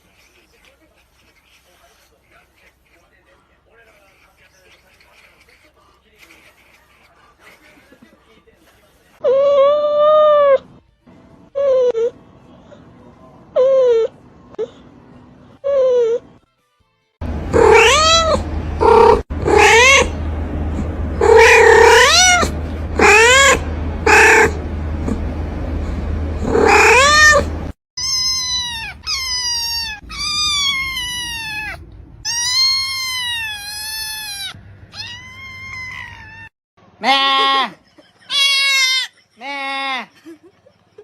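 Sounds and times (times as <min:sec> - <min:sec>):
low steady rumble: 0:17.2 - 0:27.8
cats meowing: 0:17.5 - 0:20.2, 0:21.2 - 0:24.6, 0:26.5 - 0:37.7, 0:38.3 - 0:39.1.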